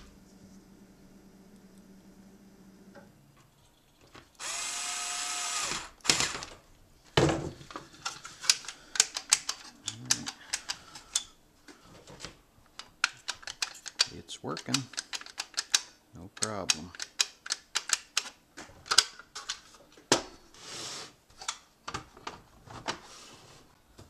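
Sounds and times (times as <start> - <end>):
small electric motor whirring: 4.4 - 6.2
sharp plastic clicks: 8.0 - 11.3, 12.7 - 19.6.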